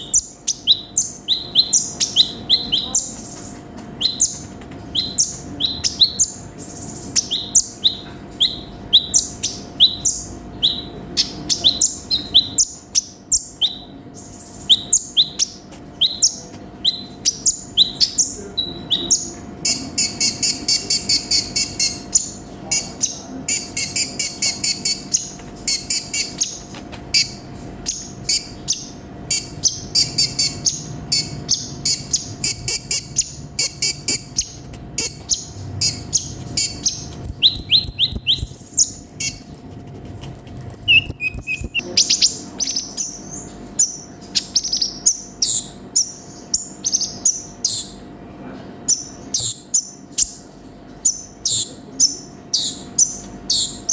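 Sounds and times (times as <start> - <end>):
bird chirping and trilling: 0.0 - 48.1, 48.8 - 53.9.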